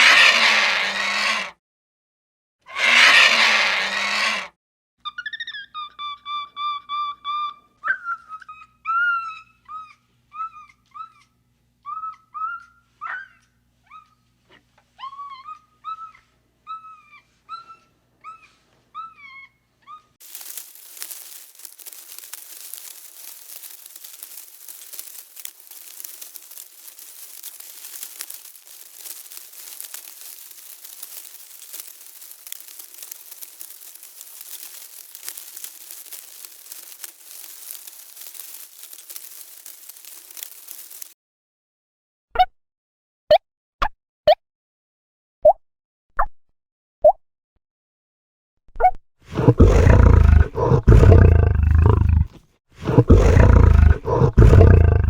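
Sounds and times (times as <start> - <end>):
dense crackling rustle: 20.2 - 41.2, 49.3 - 55.0.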